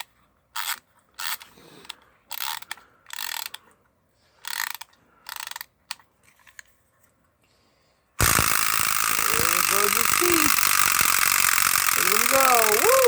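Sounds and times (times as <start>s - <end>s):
wind-up toy ratcheting clicks: 0.0s - 3.7s, 4.4s - 6.0s, 8.2s - 13.0s.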